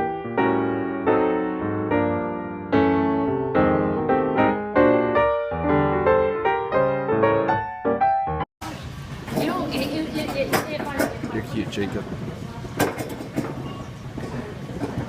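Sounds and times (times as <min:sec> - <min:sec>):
gentle piano chords: 0:00.0 - 0:08.5.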